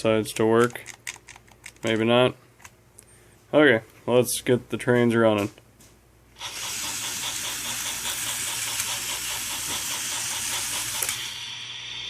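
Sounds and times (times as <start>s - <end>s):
fast regular clicking: 0.6s - 2.8s, 6.6s - 11.2s
toy train motors whirring: 6.4s - 12.0s.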